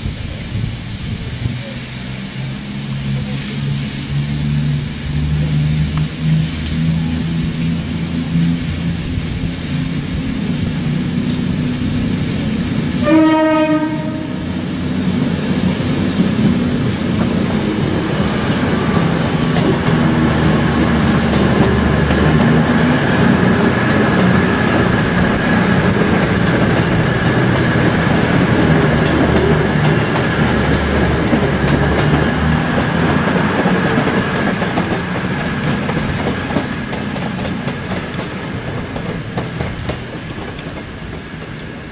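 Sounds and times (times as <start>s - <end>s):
train rumbling on rails: 0.0s - 41.9s
train horn blast: 12.9s - 14.8s.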